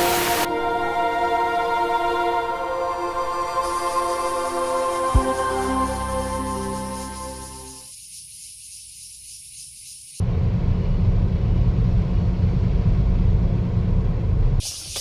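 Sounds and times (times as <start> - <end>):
heavy rain: 0.0 - 0.5
faint hiss: 0.0 - 0.6, 1.4 - 10.2
background music: 0.0 - 7.8.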